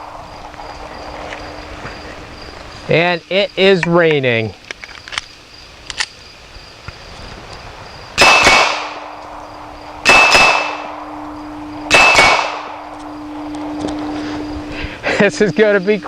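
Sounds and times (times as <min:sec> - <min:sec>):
pistol shots: 0:08.2 - 0:09.2, 0:10.0 - 0:11.0, 0:11.9 - 0:12.8.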